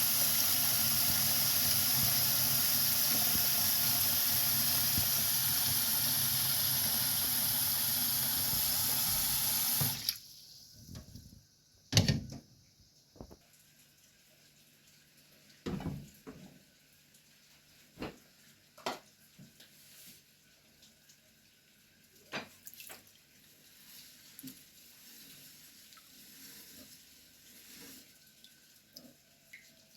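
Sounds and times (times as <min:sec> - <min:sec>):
tap water running into sink: 0:00.0 - 0:10.2.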